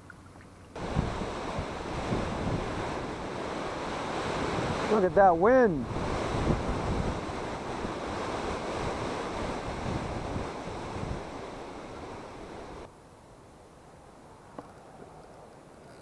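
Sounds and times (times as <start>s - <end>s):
wind buffeting microphone: 0.8s - 12.9s.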